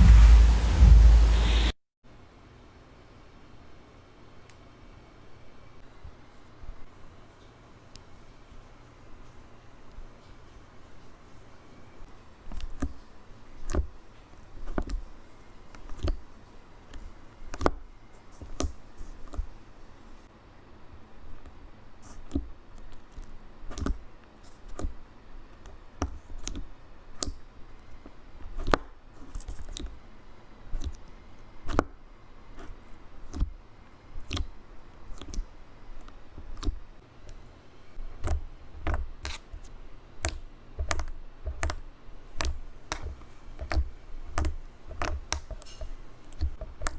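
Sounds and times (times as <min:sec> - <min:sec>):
slime being pressed by hand: 0:23.7 - 0:24.0, 0:34.2 - 0:34.5, 0:36.4 - 0:36.8, 0:42.4 - 0:46.9.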